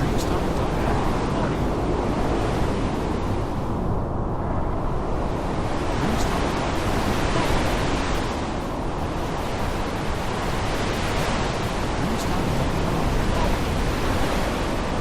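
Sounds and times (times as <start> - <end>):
heavy rain hissing: 0.0 - 2.0, 5.9 - 15.0.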